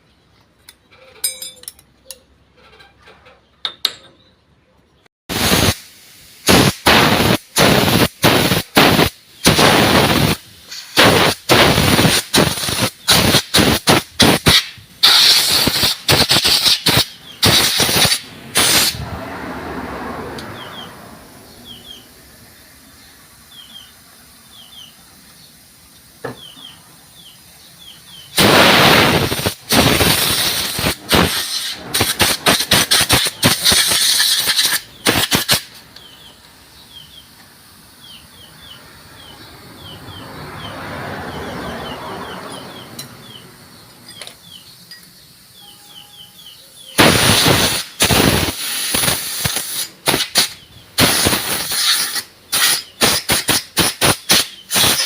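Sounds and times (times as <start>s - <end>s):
hissing air jet blasts: 5.3s - 26.5s, 27.2s - 35.9s, 47.0s - 55.0s
faint bird chirps: 41.8s - 47.0s.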